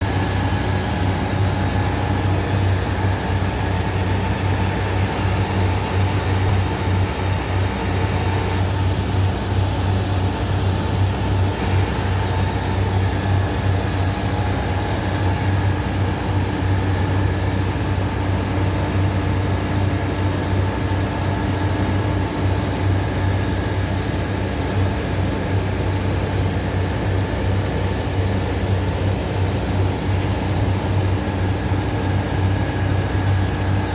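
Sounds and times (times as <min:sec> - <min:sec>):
electric motor humming: 0:11.4 - 0:15.6.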